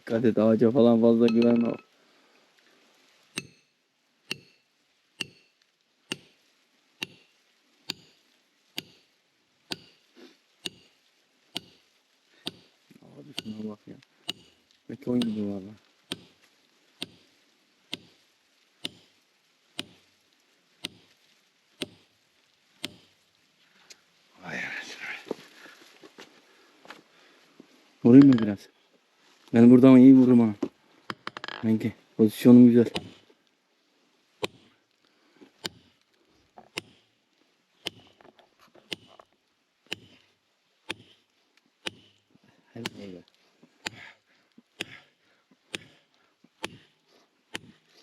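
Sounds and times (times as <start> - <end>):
metal tool striking stone: 1.3 - 1.8, 3.4 - 6.4, 7.0 - 7.3, 7.9 - 8.2, 8.8 - 9.1, 9.7 - 10.0, 10.6 - 11.8, 12.4 - 12.7, 13.3 - 13.6, 14.3 - 14.6, 15.2 - 15.5, 16.1 - 16.4, 17.0 - 17.2, 17.9 - 18.2, 18.8 - 19.1, 19.8 - 20.0, 20.8 - 21.1, 21.8 - 22.1, 22.8 - 23.1, 28.2 - 28.6, 32.9 - 33.3, 34.4 - 34.8, 35.6 - 36.0, 36.6 - 37.1, 37.8 - 38.3, 38.9 - 39.3, 39.9 - 40.3, 40.9 - 43.1, 43.8 - 44.1, 44.8 - 45.1, 45.7 - 46.0, 46.6 - 46.9, 47.5 - 47.8.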